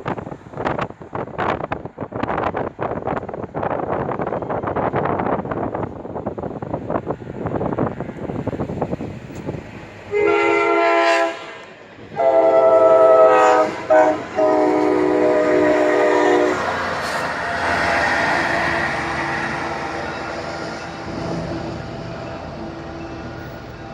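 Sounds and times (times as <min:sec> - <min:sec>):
train wheels rumbling on rails: 0:00.0 - 0:23.9
train horn blasts: 0:10.1 - 0:23.6.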